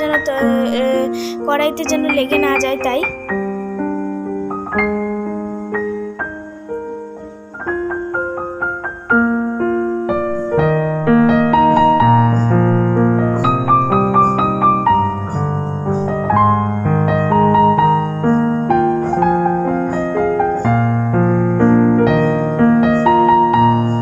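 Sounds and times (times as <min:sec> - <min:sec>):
gentle piano music: 0:00.0 - 0:24.0.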